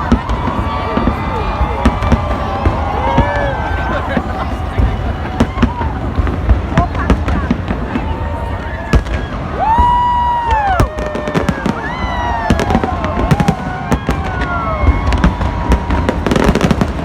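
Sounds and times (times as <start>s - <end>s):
firework bangs and pops: 0.0s - 17.0s
firework crackle: 0.0s - 17.0s
firework whistles: 7.9s - 17.0s.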